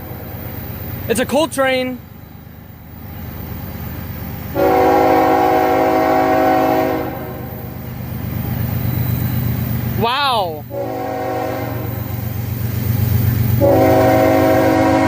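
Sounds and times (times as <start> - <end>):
train rumbling: 0.0 - 15.0
train air horn blast: 4.6 - 7.5, 10.7 - 12.2, 13.6 - 15.0.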